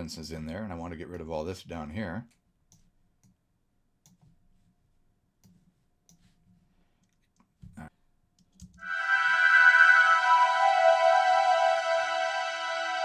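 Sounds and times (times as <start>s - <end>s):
computer mouse and keys clicking: 2.3s - 3.4s, 4.0s - 4.5s, 5.4s - 7.6s, 8.3s - 8.8s
sustained synth pad chord: 8.8s - 13.0s.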